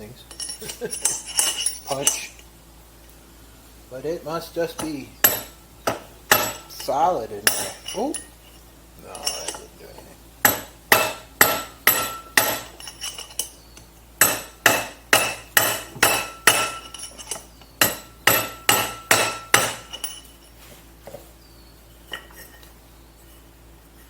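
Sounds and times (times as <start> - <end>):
hammer striking metal punch: 4.8 - 8.3, 10.4 - 13.5, 14.2 - 20.3.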